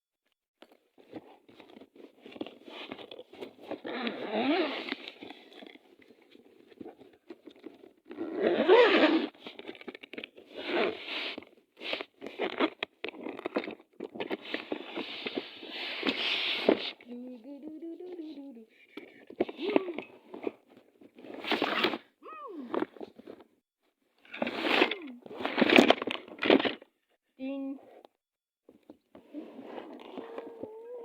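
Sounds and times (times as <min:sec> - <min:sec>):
cartoon rustling and crunching: 0:11.9 - 0:14.8.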